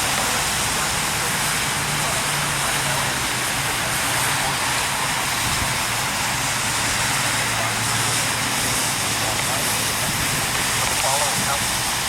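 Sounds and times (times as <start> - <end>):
radio static hiss: 6.7 - 12.0.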